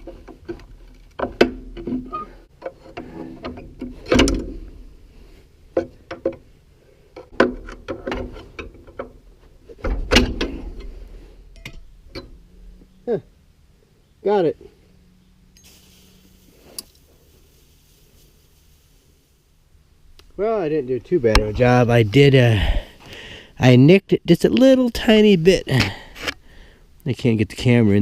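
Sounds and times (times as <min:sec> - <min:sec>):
metal-on-metal knocks and clanks: 0:00.2 - 0:04.7.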